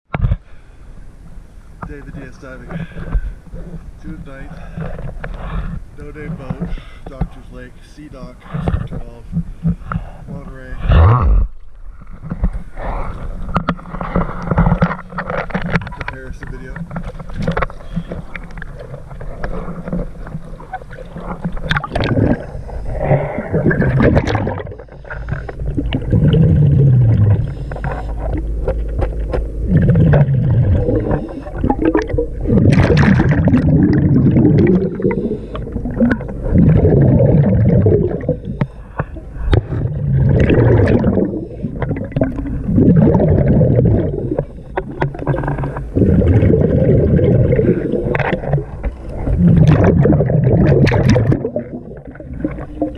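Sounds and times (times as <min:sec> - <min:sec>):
diver exhaling gurgling bubbles: 0:09.8 - 0:16.1, 0:17.1 - 0:52.9.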